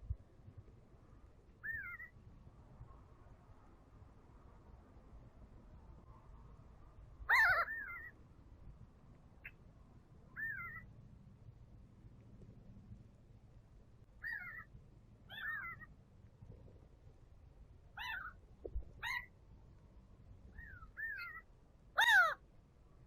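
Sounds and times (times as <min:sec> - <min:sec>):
high mewing calls: 0:07.3 - 0:08.2, 0:14.2 - 0:14.7, 0:15.3 - 0:15.9, 0:18.0 - 0:18.4, 0:20.6 - 0:22.4.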